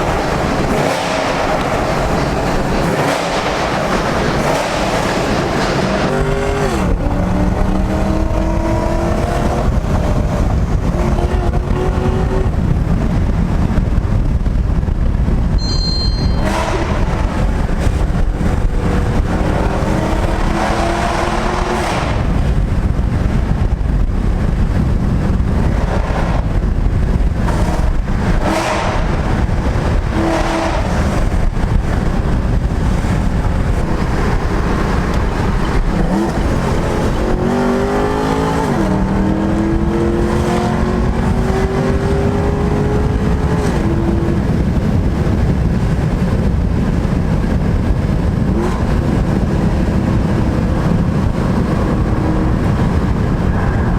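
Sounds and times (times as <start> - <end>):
loud vee eight exhaust revving: 0.0 - 12.5, 16.3 - 22.6, 27.4 - 44.8.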